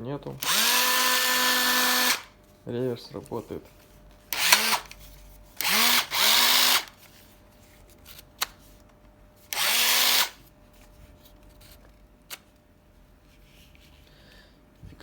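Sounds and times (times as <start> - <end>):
cordless drill motor whining: 0.4 - 2.3, 4.3 - 5.0, 5.6 - 7.0, 9.5 - 10.4.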